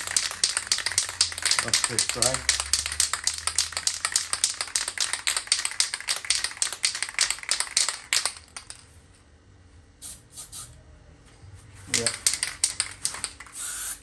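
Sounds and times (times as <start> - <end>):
aerosol can ball clacking: 0.0 - 8.5.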